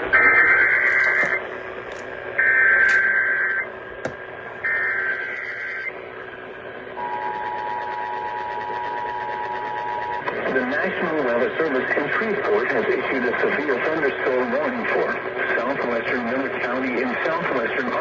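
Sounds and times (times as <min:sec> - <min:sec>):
two-tone attention signal: 0:00.1 - 0:01.4, 0:07.0 - 0:10.2
warbling data bursts: 0:00.1 - 0:01.4, 0:04.7 - 0:05.9.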